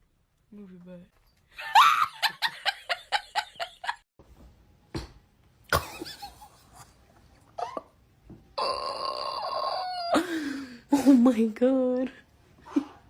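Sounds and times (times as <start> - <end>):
person laughing: 1.6 - 4.0.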